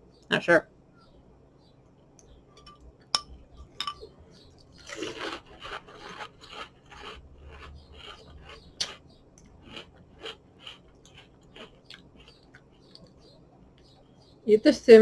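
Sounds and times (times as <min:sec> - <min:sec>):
cereal crunching while chewed: 0:04.6 - 0:13.2.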